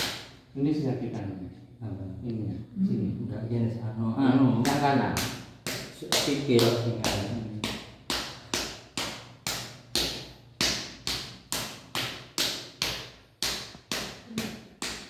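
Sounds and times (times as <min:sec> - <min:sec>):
hand slapping a leg: 0:00.0 - 0:00.4, 0:04.6 - 0:15.0.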